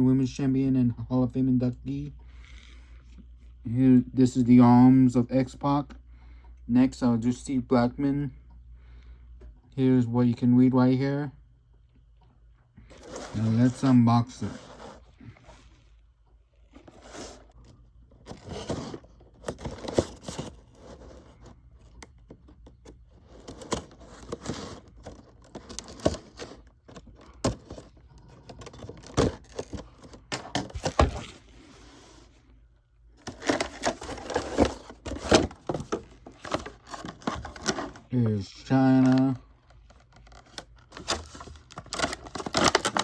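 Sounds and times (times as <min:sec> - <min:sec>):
cardboard and plastic crinkling: 0:12.8 - 0:15.8, 0:16.6 - 0:32.0, 0:33.2 - 0:43.0.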